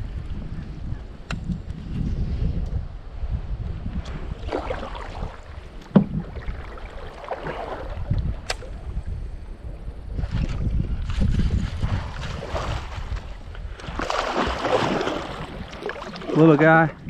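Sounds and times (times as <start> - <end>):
wind buffeting microphone: 0.0 - 17.0
water splashes: 4.3 - 8.7, 10.2 - 17.0
light click: 8.4 - 8.7.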